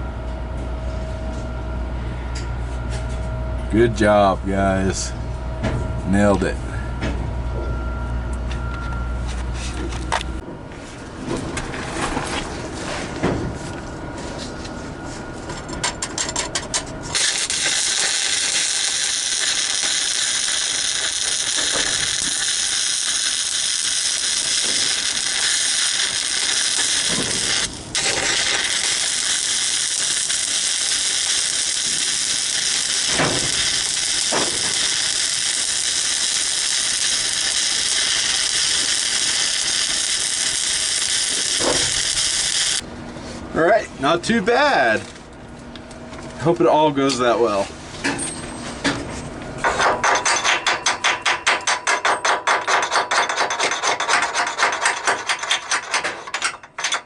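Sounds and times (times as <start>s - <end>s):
welding electrode striking clicks: 16.2s - 42.8s
welding arc crackling sizzle: 16.8s - 42.8s.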